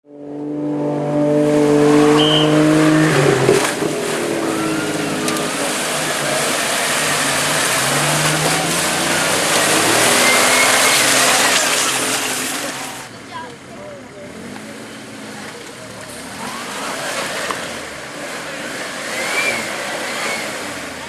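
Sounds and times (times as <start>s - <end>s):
car engine running hard: 0.0s - 21.0s
loud rushing noise: 1.3s - 13.1s.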